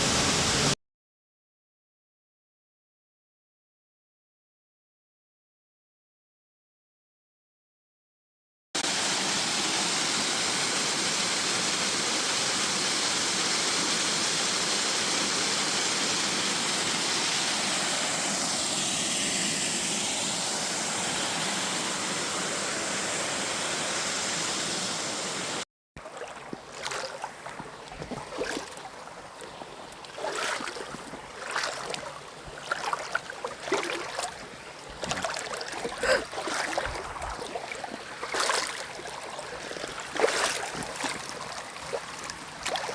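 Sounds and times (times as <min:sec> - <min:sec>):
uneven running water: 0:26.0 - 0:42.9.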